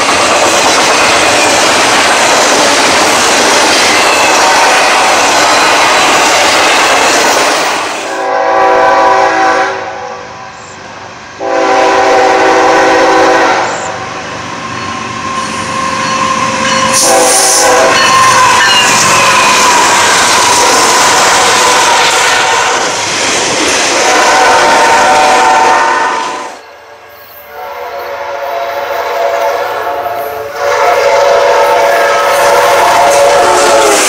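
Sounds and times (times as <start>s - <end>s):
train rushing on rails: 0.0s - 34.0s
locomotive air horn: 4.2s - 5.1s, 8.0s - 10.5s, 11.4s - 14.0s, 15.6s - 22.8s, 24.0s - 34.0s.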